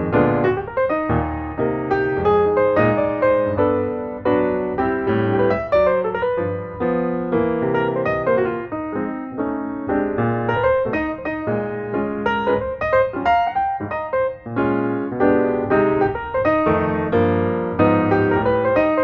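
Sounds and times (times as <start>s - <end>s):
lively piano melody: 0.0s - 19.0s.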